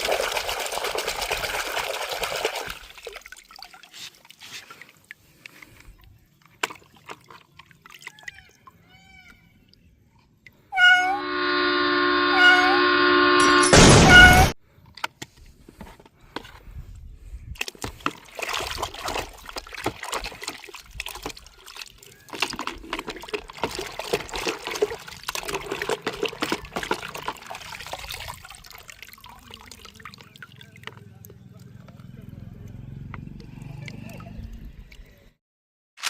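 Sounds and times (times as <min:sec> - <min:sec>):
water splashing and trickling: 0:00.0 - 0:10.8, 0:16.4 - 0:35.4
loud burst of noise: 0:12.7 - 0:14.6.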